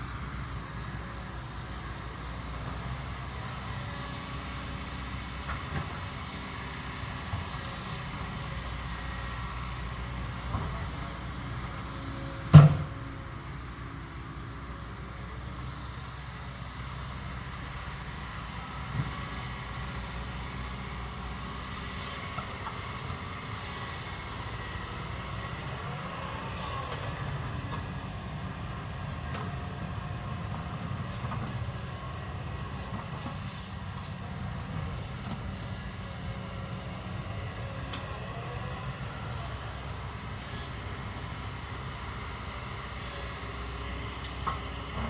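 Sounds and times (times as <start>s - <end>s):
excavator diesel engine running: 0.0s - 45.0s
faint engine whine: 0.0s - 45.0s.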